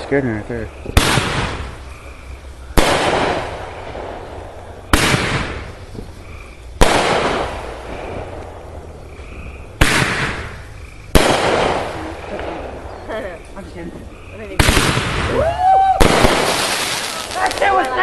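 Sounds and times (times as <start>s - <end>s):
fireworks bangs: 0.0s - 18.0s.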